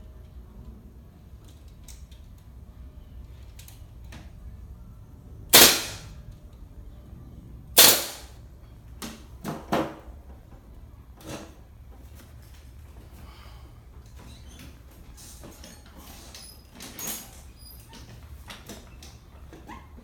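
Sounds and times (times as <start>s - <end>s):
nail gun firing: 5.5s - 6.1s, 7.8s - 8.3s.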